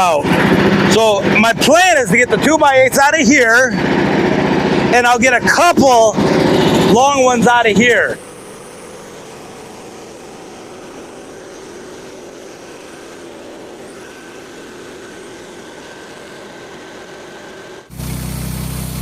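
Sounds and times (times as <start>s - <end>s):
small gasoline engine running: 0.0s - 19.0s
faint thin whine: 6.6s - 17.9s.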